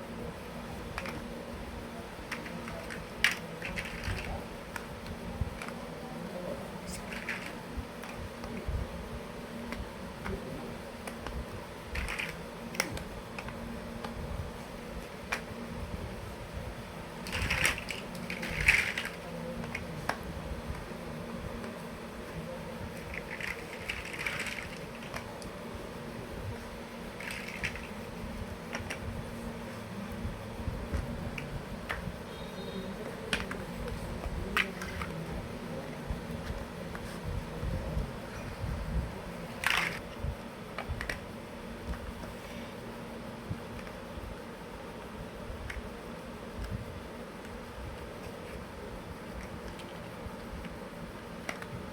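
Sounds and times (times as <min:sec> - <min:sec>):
steady low hum: 0:00.0 - 0:51.9
plastic blocks clicking: 0:02.3 - 0:04.9, 0:07.0 - 0:08.2, 0:12.0 - 0:13.6, 0:17.2 - 0:19.9, 0:23.0 - 0:25.3, 0:27.2 - 0:27.9.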